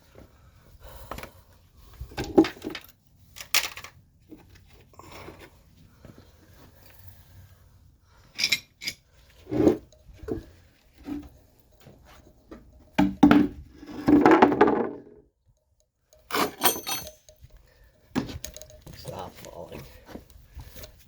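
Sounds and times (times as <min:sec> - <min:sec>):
metal tools clanking: 0:08.3 - 0:15.1, 0:16.1 - 0:20.0
scraping rattle: 0:16.1 - 0:19.3.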